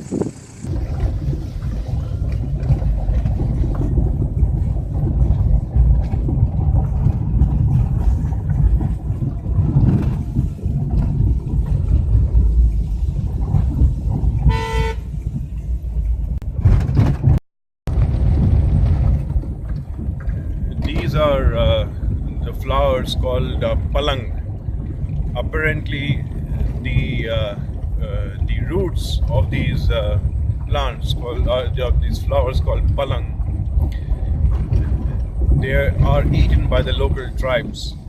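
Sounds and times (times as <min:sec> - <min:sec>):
car road rumble: 0:00.0 - 0:38.0
wind on microphone: 0:00.0 - 0:38.0
car horn toot: 0:14.4 - 0:15.1.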